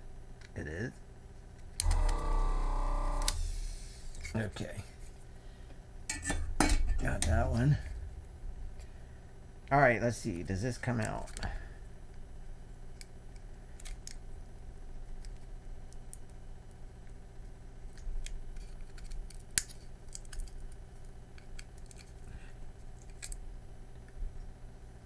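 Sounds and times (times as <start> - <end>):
low hum: 1.6 - 19.2.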